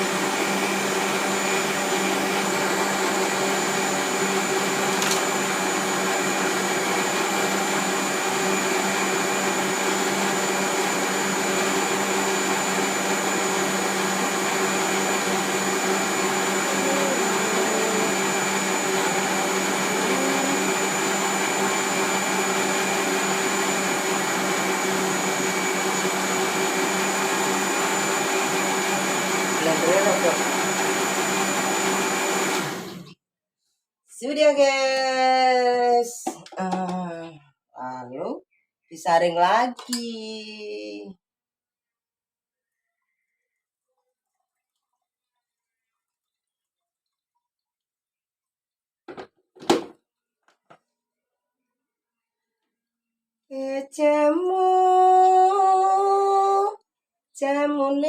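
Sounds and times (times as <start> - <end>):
electric blender grinding: 0.0 - 33.2.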